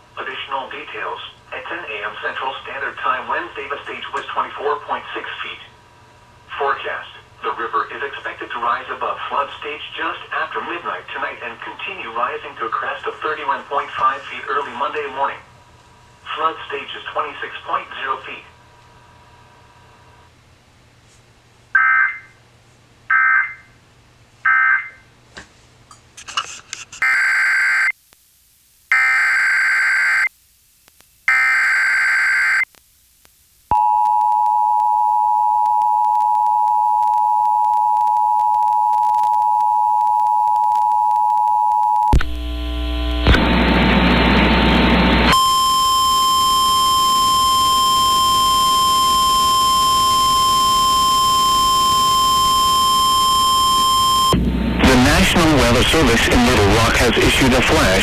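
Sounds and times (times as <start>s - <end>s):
loud static: 0.0s - 20.3s, 42.1s - 58.0s
two-tone attention signal: 45.3s - 54.4s
steady single-pitch alert tone: 45.3s - 55.1s.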